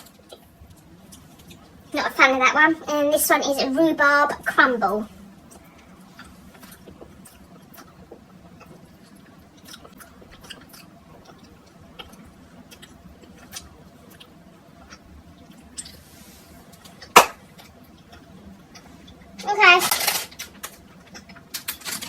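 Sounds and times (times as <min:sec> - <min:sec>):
person chewing close to microphone: 0:00.0 - 0:01.9, 0:05.2 - 0:19.4, 0:20.5 - 0:21.8.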